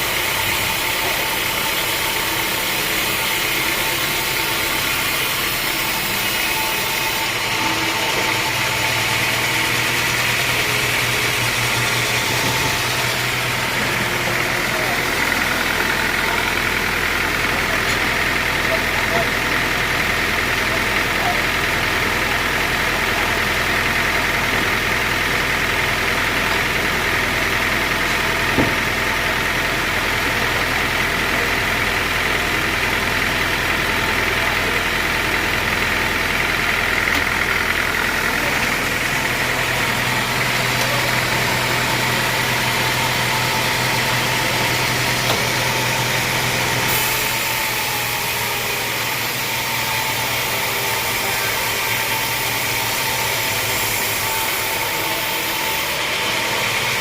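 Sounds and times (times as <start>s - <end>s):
sawmill engine running: 0.0s - 57.0s
hiss of cutting: 46.9s - 48.6s.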